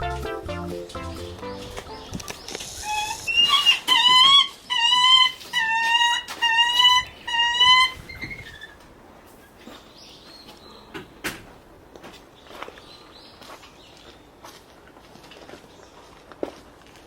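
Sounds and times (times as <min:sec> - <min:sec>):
background music: 0:00.0 - 0:02.3
falcon harsh calls: 0:02.6 - 0:08.7.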